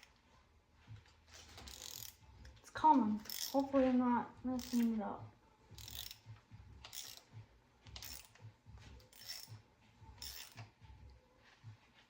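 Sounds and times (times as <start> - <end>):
ratchet wrench clicking: 1.3 - 2.2, 3.2 - 3.7, 4.6 - 4.9, 5.7 - 8.4, 9.0 - 9.6, 10.2 - 10.7.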